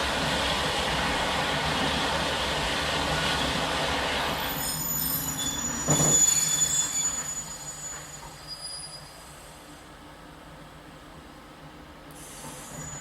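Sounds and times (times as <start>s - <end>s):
train rumbling on rails: 0.0s - 13.0s
wheel squeal: 4.4s - 9.3s.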